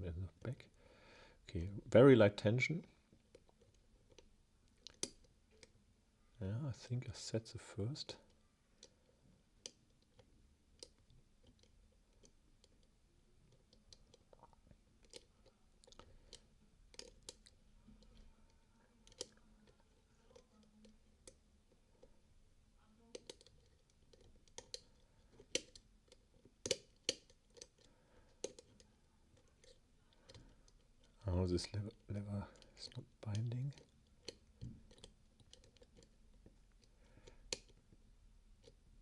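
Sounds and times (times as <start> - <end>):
metallic clicks of lock picking: 15.0 - 17.5, 19.0 - 19.4, 23.1 - 28.9, 37.2 - 37.8.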